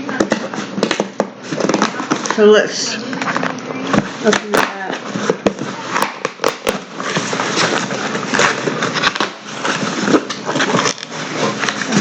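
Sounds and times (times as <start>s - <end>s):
packaging rustling and crinkling: 3.3s - 12.0s.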